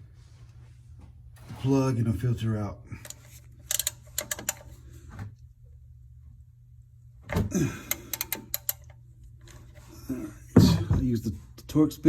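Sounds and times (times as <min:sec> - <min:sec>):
socket wrench clicking: 0:03.0 - 0:04.8, 0:07.9 - 0:09.0.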